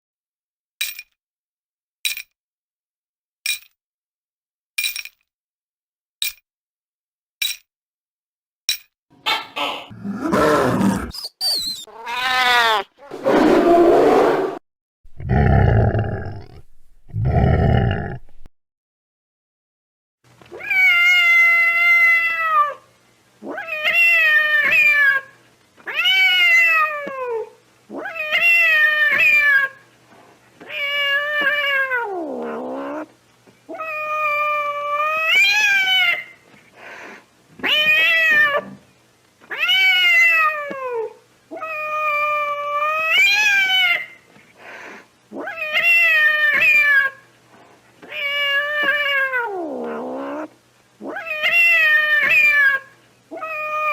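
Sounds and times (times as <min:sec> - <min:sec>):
cat yowling: 0:09.3 - 0:14.0, 0:20.6 - 0:22.8, 0:25.9 - 0:29.8, 0:39.5 - 0:44.2, 0:48.1 - 0:53.9.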